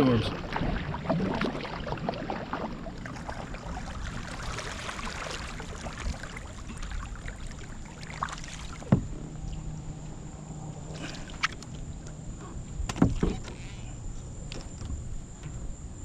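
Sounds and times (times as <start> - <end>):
water splashing and dripping: 0.0 - 9.6
light knocks on boat: 8.8 - 9.2, 12.4 - 13.6.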